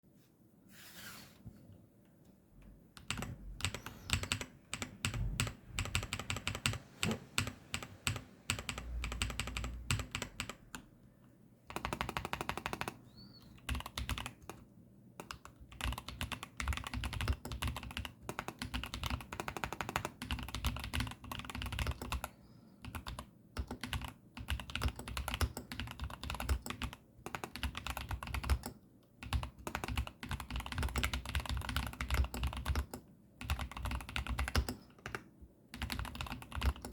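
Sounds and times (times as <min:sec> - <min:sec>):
mechanical keyboard typing: 0:03.0 - 0:10.9, 0:11.7 - 0:14.6, 0:15.2 - 0:36.9.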